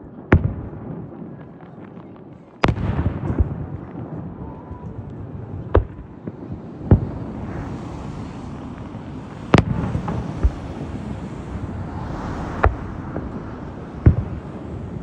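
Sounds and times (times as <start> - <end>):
rolling rumble and crackle: 1.4 - 15.0
firework shells booming: 8.4 - 11.6, 12.5 - 15.0.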